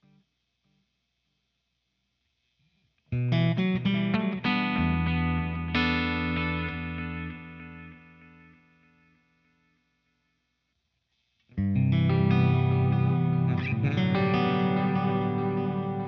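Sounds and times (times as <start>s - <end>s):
electric guitar with delay: 3.2s - 9.1s, 11.6s - 16.0s.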